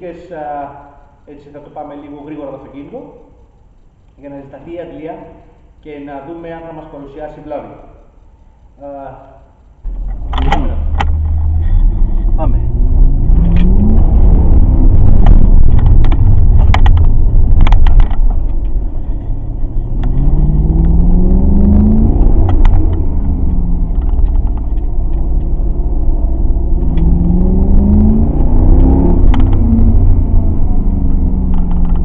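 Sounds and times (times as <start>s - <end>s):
sharp clicks: 0.5s - 32.0s
car engine accelerating hard: 9.8s - 32.0s.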